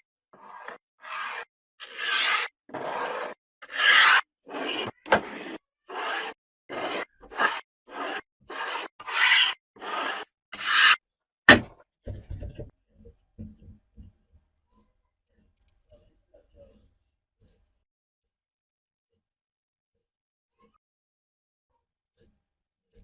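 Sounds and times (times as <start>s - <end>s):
hand abrading rasping strokes: 0.4s - 11.0s.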